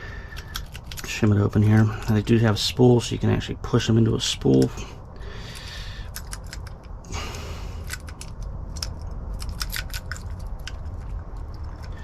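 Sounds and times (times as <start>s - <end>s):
metallic clicks and scrapes in lock: 0.3s - 1.1s, 5.5s - 7.0s, 7.8s - 12.0s.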